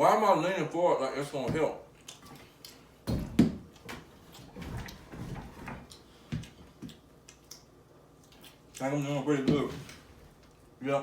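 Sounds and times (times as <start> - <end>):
man chewing: 1.9 - 3.0, 5.8 - 8.8.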